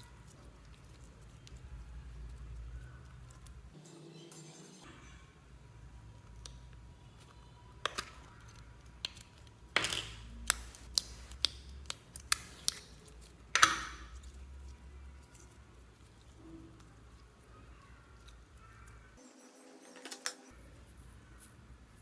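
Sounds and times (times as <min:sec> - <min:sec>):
slime squelching: 0:06.3 - 0:19.2
slime popping and clicking: 0:10.4 - 0:13.0.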